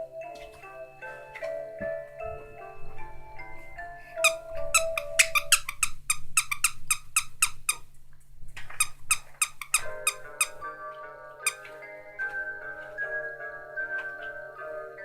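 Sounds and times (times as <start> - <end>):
fast short squeaks: 4.2 - 7.9, 8.7 - 10.6
chiming mallet tune: 10.2 - 15.0.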